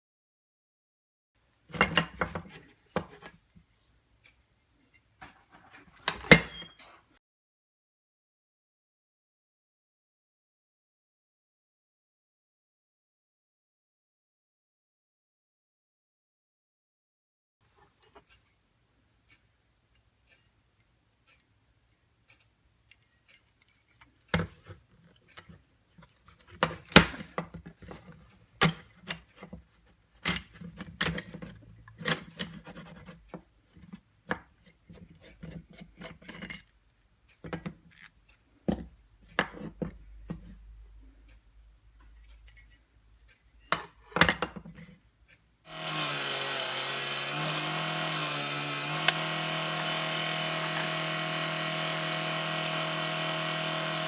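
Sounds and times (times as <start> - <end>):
knocks and clicks of tools: 5.2 - 7.1, 22.3 - 36.7, 43.3 - 54.0
electric power tool running: 45.7 - 54.0.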